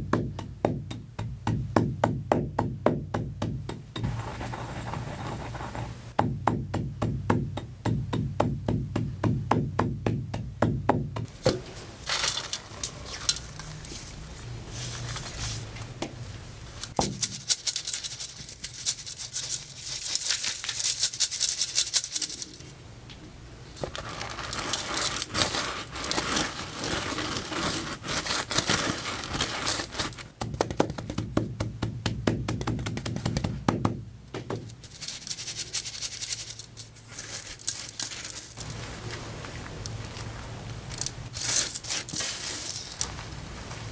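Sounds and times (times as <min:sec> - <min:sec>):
chalk crunching and crumbling: 0:11.3 - 0:15.8, 0:16.9 - 0:22.6, 0:23.8 - 0:30.3, 0:34.8 - 0:43.4.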